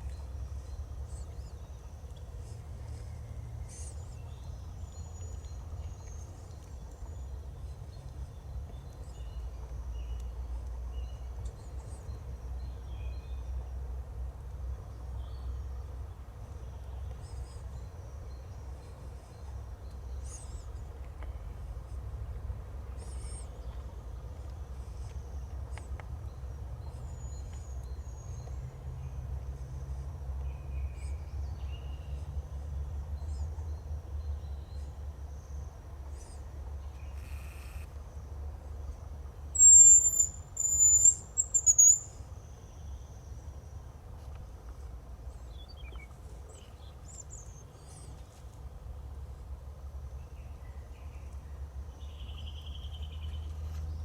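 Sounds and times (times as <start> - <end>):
small birds chirping: 0.0 - 13.7, 16.6 - 22.1, 33.0 - 48.5
low background rumble: 0.0 - 37.2
high thin bird whistle: 39.6 - 42.0.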